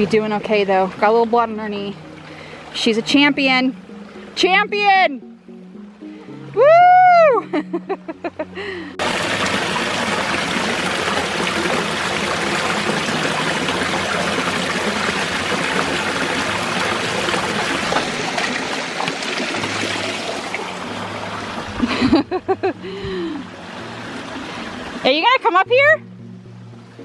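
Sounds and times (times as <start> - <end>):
creek water flowing over rocks: 0.0 - 7.1, 8.6 - 25.9.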